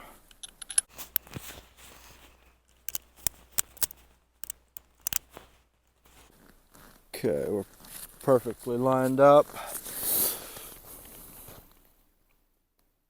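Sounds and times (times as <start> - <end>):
revolver cylinder ratcheting: 2.8 - 5.3.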